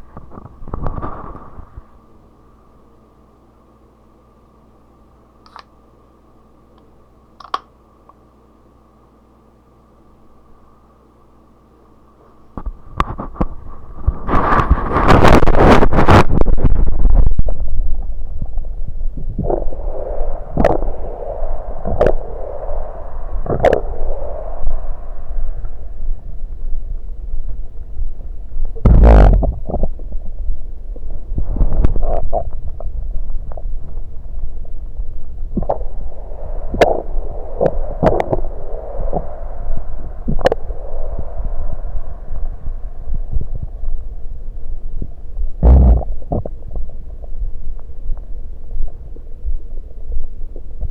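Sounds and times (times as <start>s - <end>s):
stomach gurgling: 0.0s - 1.9s, 12.6s - 25.8s, 28.8s - 41.9s, 45.0s - 49.2s
sharp clicks: 7.4s - 7.7s
loud rushing noise: 19.4s - 26.8s, 35.5s - 44.1s.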